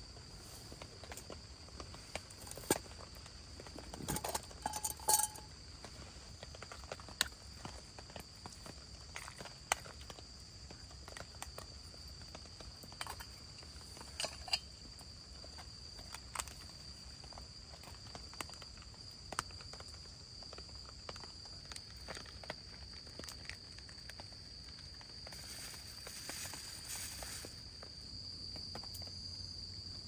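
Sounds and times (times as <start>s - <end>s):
high-pitched insect trill: 0.1s - 5.6s, 21.7s - 30.0s.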